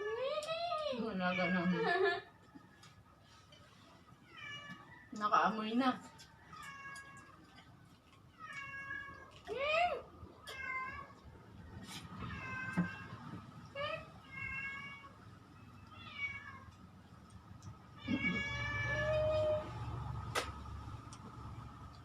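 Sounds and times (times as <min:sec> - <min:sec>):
cat meowing: 0:18.0 - 0:19.7.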